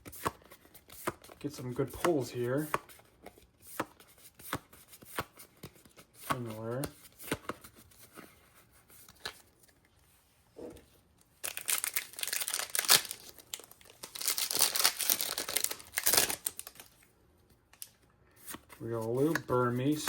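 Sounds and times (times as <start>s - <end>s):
foil wrapper crinkling and tearing: 11.4s - 17.0s.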